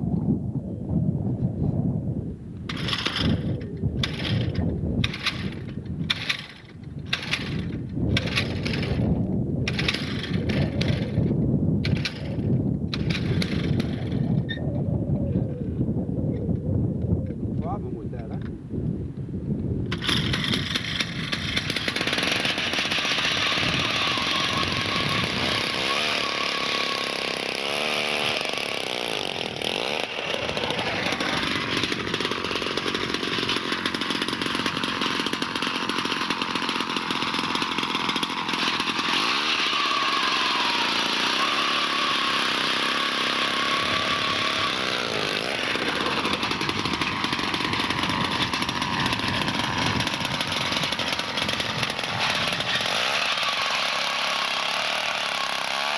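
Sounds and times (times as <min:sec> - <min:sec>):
ice auger engine running: 0:02.7 - 0:03.4, 0:04.0 - 0:14.3, 0:19.9 - 0:55.9.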